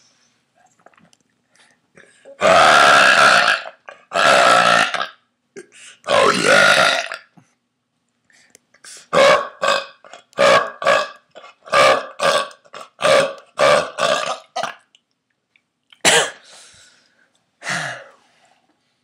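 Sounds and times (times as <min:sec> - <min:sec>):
man burping: 0:02.0 - 0:07.3, 0:09.1 - 0:14.8.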